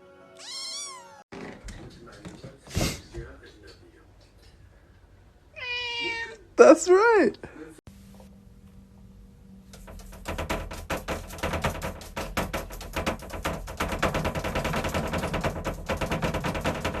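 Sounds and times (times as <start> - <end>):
low hum: 7.9 - 16.9.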